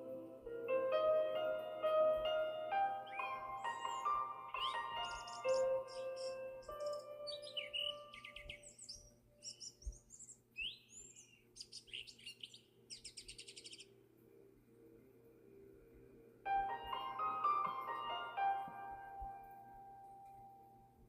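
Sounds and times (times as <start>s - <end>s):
small birds chirping: 2.2s - 14.5s.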